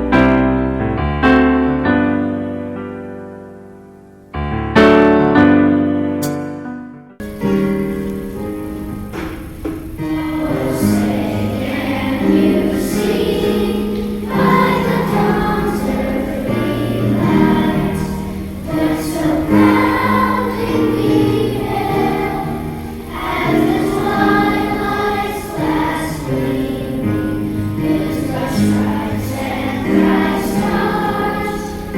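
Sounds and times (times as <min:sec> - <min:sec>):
children's choir singing: 0:07.2 - 0:31.9.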